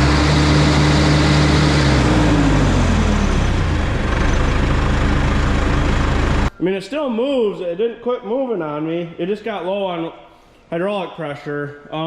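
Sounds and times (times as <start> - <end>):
diesel engine running loudly: 0.0 - 6.5.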